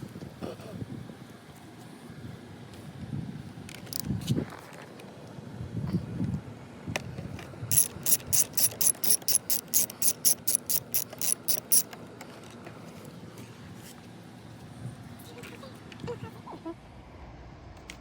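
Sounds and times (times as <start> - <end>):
ratchet wrench clicking: 3.7 - 4.1, 7.7 - 12.0.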